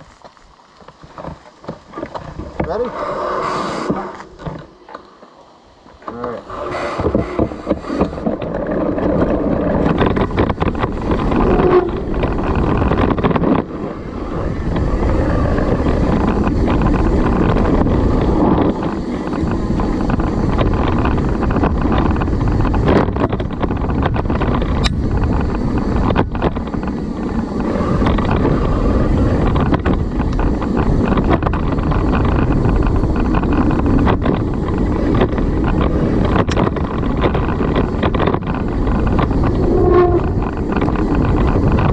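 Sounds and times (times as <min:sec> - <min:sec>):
bike tyres rolling on dirt: 0:00.0 - 0:41.9
wind rushing over microphone: 0:02.2 - 0:41.9
bike rattling and clacking: 0:07.4 - 0:41.9.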